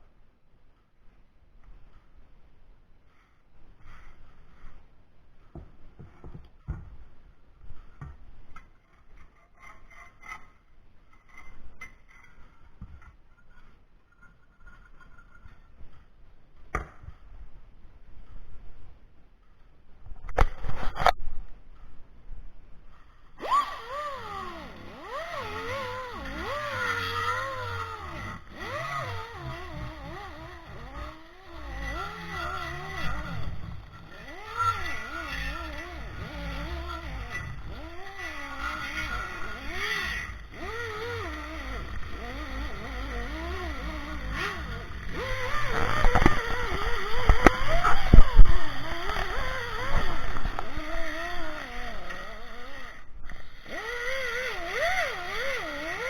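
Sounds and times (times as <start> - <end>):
knocks and rattles: 23.4 - 51.5
engine revving: 23.4 - 53.0, 53.6 - 56.0.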